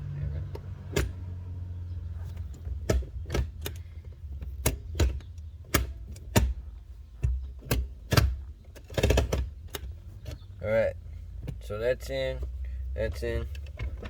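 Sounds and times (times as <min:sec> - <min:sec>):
low steady hum: 0:00.0 - 0:14.0
plastic trim clicks and knocks: 0:02.3 - 0:10.5.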